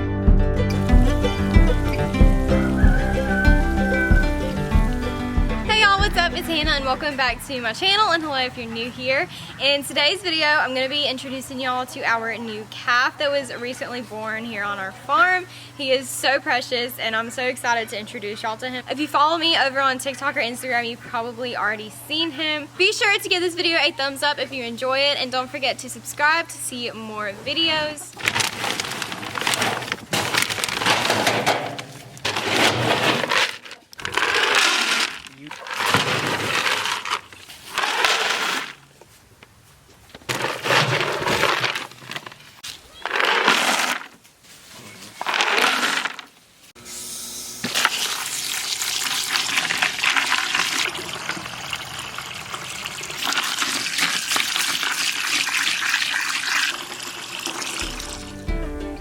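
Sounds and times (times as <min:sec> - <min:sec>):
dense crackling and crunching: 0:28.2 - 0:39.0, 0:40.0 - 0:44.3, 0:45.0 - 0:46.4
water running and splashing: 0:47.8 - 0:58.0.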